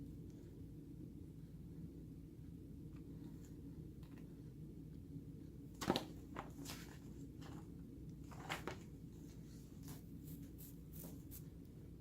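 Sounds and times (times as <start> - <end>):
low steady hum: 0.0 - 12.0
paper pages rustling: 5.8 - 11.5.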